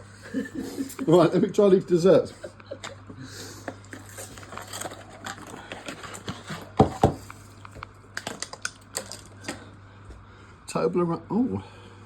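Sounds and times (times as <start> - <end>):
packaging clicks and rustles: 3.6 - 9.7.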